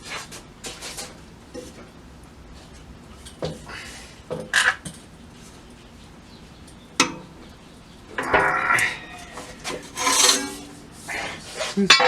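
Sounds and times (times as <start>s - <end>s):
rattling scrape: 8.4s - 11.7s.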